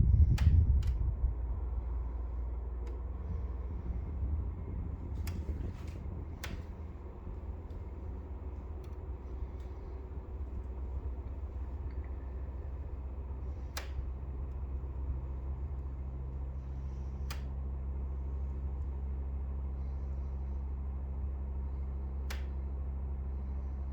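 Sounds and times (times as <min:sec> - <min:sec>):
air conditioner humming: 0:00.0 - 0:23.9
sharp clicks: 0:05.2 - 0:14.7, 0:17.2 - 0:17.6, 0:22.3 - 0:22.6.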